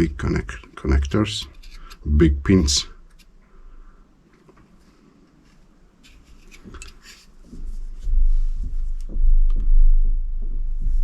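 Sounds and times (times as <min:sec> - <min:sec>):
loud low rumble: 0:09.2 - 0:11.0.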